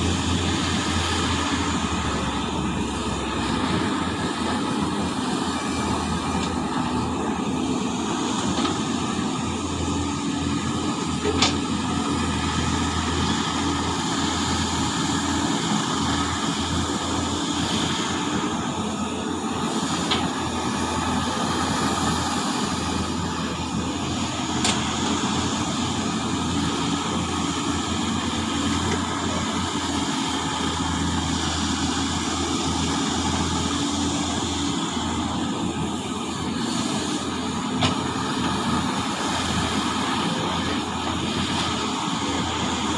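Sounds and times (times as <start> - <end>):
excavator diesel engine drone: 0.0 - 42.9.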